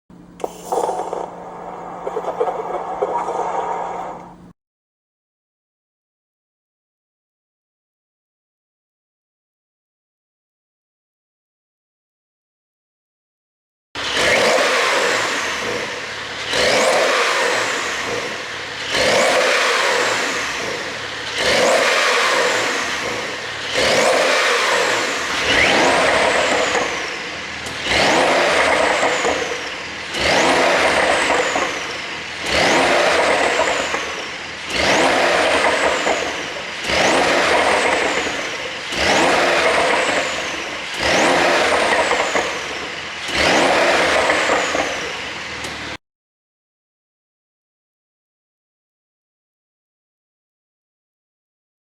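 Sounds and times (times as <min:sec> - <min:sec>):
car engine revving: 0:00.2 - 0:04.5, 0:14.0 - 0:46.0.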